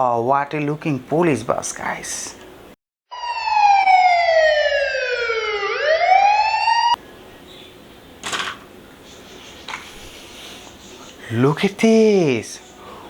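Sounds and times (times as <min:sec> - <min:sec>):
police siren wailing: 0:03.1 - 0:07.0.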